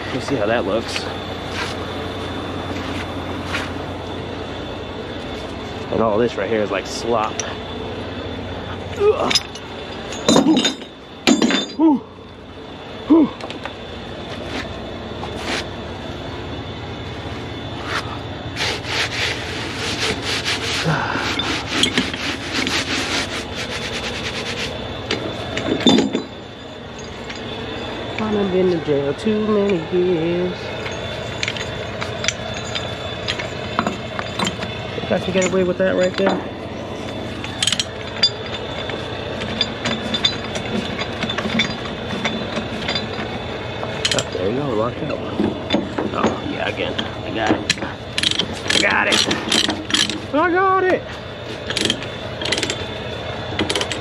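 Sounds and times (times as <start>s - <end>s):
engine humming: 0.0s - 54.0s
metal chain clinking: 8.9s - 12.0s, 21.2s - 22.9s, 24.4s - 28.8s, 30.5s - 50.3s, 51.4s - 54.0s.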